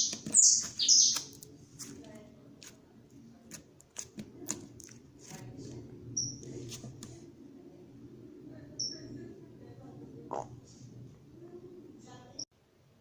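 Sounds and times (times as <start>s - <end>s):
high chirps: 0.0s - 1.4s, 8.8s - 9.1s.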